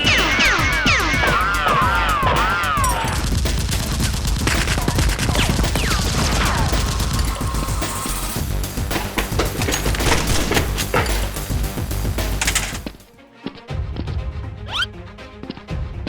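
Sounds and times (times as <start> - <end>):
swooping tones: 0.0 - 3.3
gunfire sound effects: 0.0 - 8.3
background music: 0.0 - 16.0.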